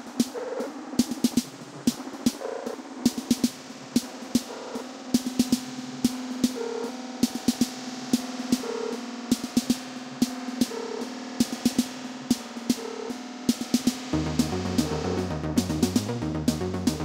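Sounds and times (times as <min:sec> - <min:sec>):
drum machine hits: 0:00.0 - 0:04.6, 0:05.2 - 0:17.0
synth drone: 0:14.1 - 0:17.0
short repeating synth note: 0:14.2 - 0:17.0.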